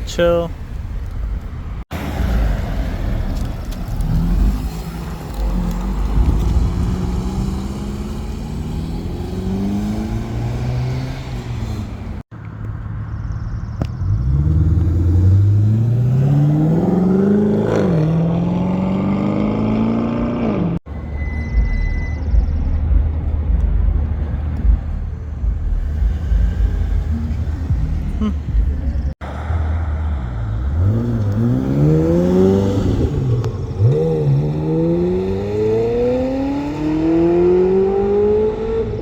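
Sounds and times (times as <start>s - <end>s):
car engines accelerating: 1.9s - 39.0s
low engine rumble: 20.9s - 31.6s.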